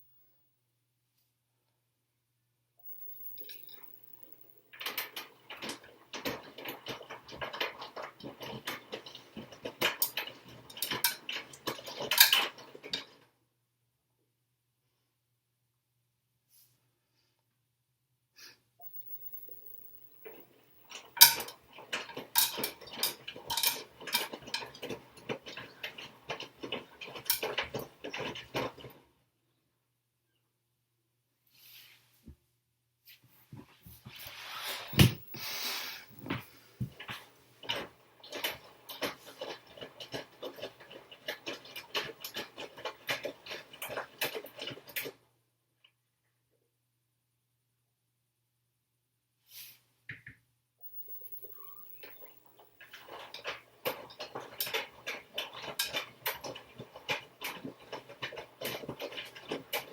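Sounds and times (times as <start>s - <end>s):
knocks and sloshing clicks: 3.0s - 13.2s, 19.6s - 29.0s, 36.2s - 45.2s, 51.0s - 59.9s
washing machine drum turning: 3.2s - 12.8s, 20.3s - 28.9s, 51.0s - 59.9s.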